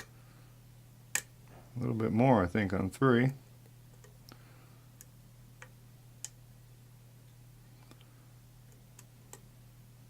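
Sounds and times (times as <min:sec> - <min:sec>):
steady low hum: 0:00.0 - 0:10.0.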